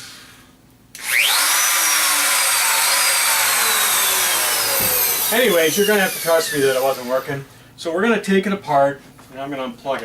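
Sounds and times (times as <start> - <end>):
router motor high whine: 1.0 - 7.3.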